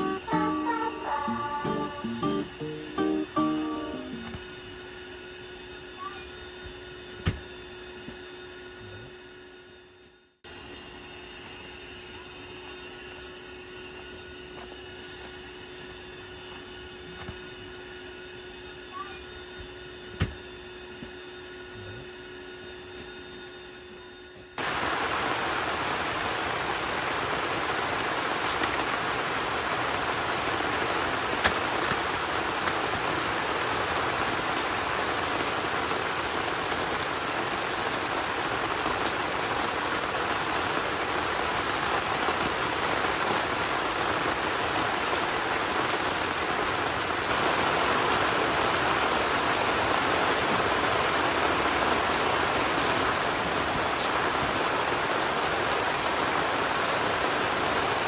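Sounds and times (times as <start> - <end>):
heavy rain hissing: 0.0 - 4.3, 24.6 - 58.0
faint steady hum: 0.0 - 4.8.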